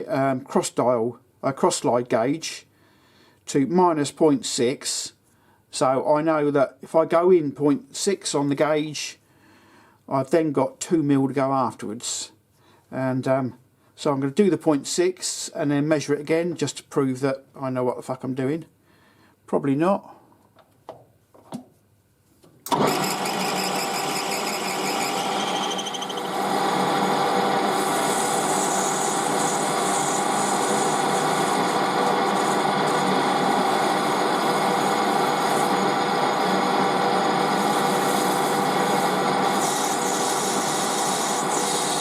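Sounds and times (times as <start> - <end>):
metal lathe running: 22.7 - 42.0.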